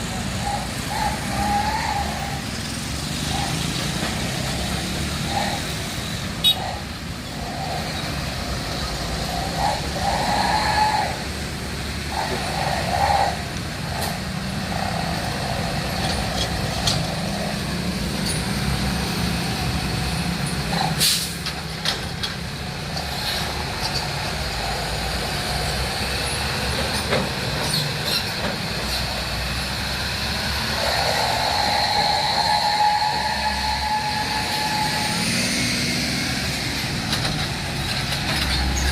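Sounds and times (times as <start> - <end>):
diesel trucks and buses: 0.0 - 38.9
air brake hiss: 21.0 - 21.4.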